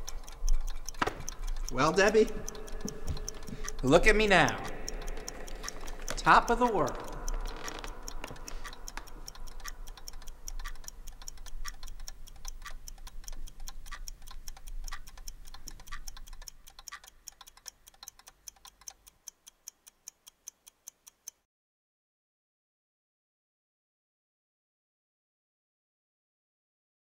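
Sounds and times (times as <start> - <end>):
low background noise: 0.0 - 21.1
clock ticking: 0.0 - 21.5.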